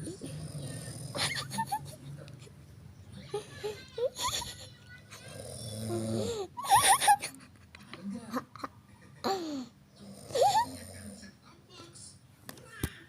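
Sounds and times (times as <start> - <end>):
long low snore: 5.3 - 6.3.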